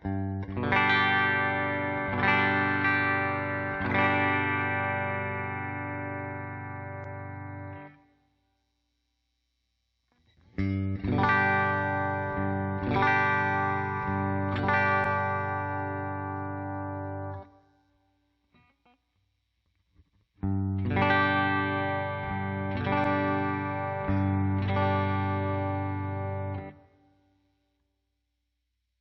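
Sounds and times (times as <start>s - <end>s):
electric guitar strumming chords: 0.0s - 8.1s, 10.4s - 17.6s, 20.4s - 26.9s.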